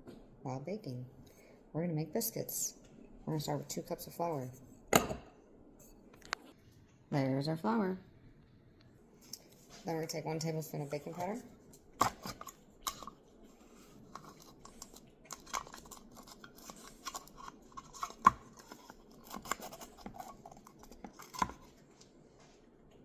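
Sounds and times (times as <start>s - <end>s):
measuring spoon scraping and clicking: 12.1s - 21.7s.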